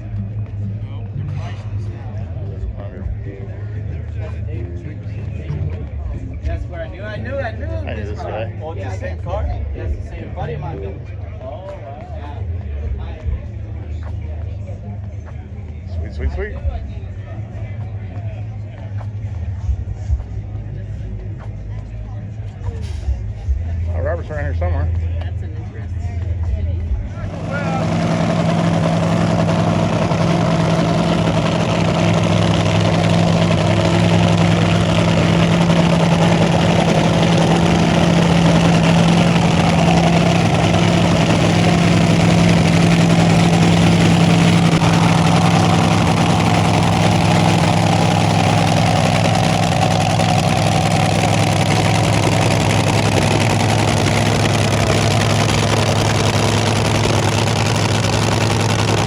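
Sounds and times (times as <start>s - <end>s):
engine idling: 26.3s - 59.0s.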